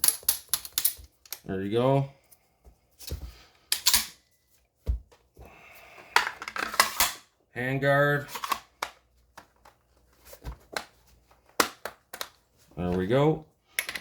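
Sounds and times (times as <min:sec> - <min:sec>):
gun parts clicking: 0:00.0 - 0:01.5, 0:03.7 - 0:04.2.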